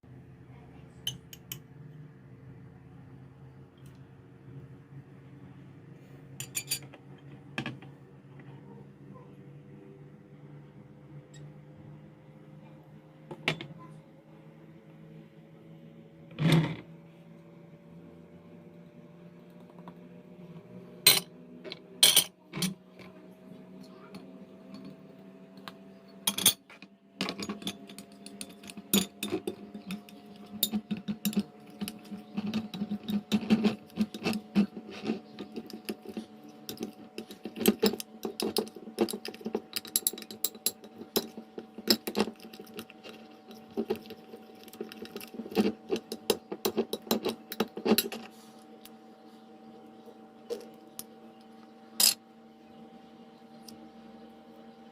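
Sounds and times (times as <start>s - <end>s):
utensil clinking against dish: 6.4s - 6.9s, 26.3s - 48.3s.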